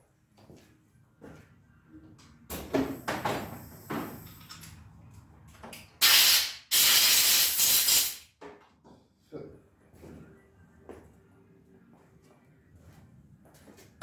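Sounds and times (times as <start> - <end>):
hissing spray bursts: 6.0 - 8.2.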